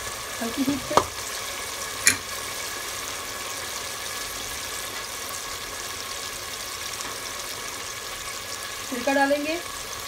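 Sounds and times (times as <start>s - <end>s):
sauce sizzling in oil: 0.0s - 10.0s.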